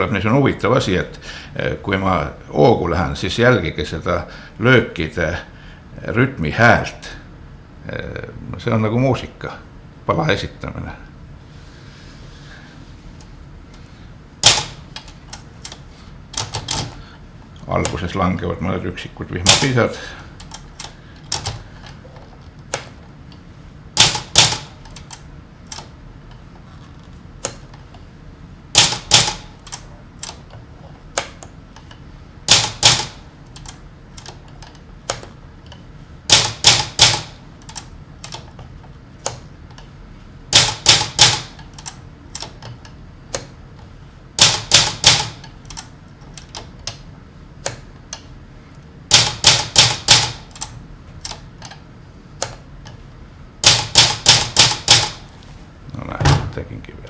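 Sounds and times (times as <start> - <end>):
typewriter keys striking: 14.4 - 17.0, 19.5 - 19.8, 20.4 - 21.6, 24.0 - 25.9, 28.8 - 30.5, 32.5 - 34.4, 36.3 - 38.5, 40.5 - 42.7, 44.4 - 47.0, 49.1 - 51.4, 53.6 - 55.2.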